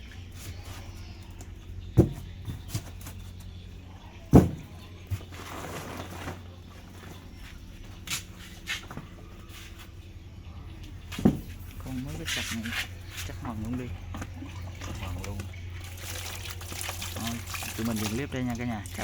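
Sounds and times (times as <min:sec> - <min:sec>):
low steady hum: 0:00.0 - 0:19.0
loud dull thumps: 0:02.0 - 0:02.7, 0:04.3 - 0:04.8.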